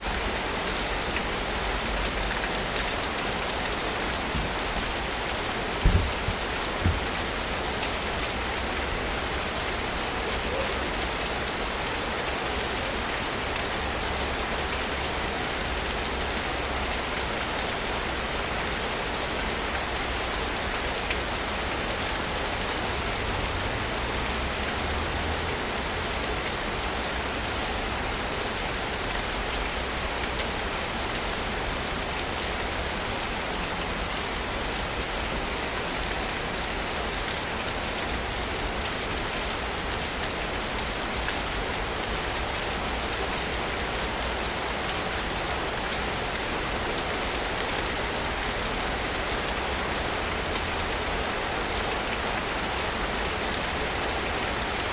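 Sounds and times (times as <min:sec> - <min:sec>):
rain hissing: 0:01.3 - 0:11.5
short low thumps: 0:05.8 - 0:07.3.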